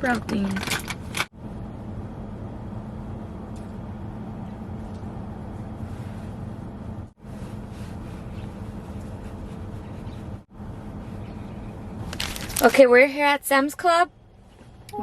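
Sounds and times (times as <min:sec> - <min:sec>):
car driving from inside cabin: 0:01.1 - 0:12.1.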